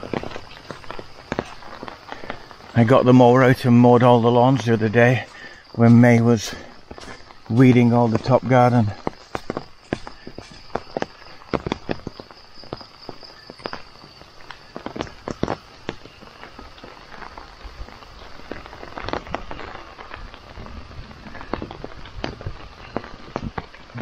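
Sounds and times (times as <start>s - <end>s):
footsteps on wet lawn: 0.0s - 24.0s.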